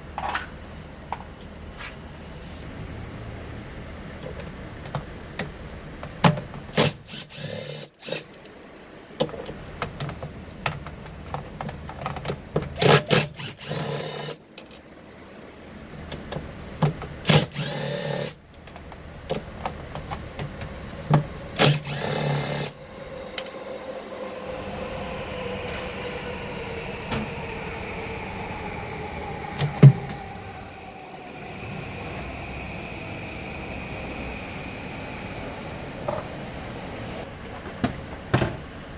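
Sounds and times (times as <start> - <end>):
power screwdriver whirring: 6.8 - 8.3, 12.8 - 14.4, 17.3 - 18.4, 21.5 - 22.8
steady hum with falling tone: 18.4 - 38.2.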